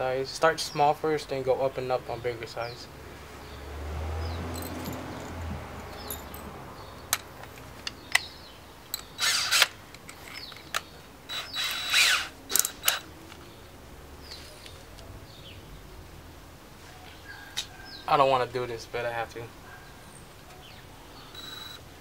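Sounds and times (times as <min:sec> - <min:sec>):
sharp clicks of tool handling: 0:07.1 - 0:08.3, 0:08.9 - 0:11.9, 0:12.5 - 0:13.4
drill chuck ratcheting: 0:08.9 - 0:13.1.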